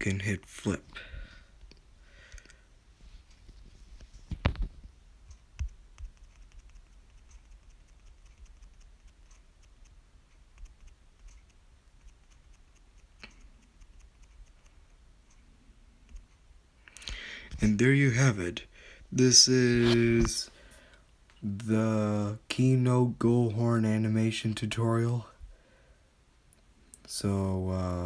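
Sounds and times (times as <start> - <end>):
low steady hum: 0.0 - 28.0
computer mouse clicks: 5.3 - 15.4.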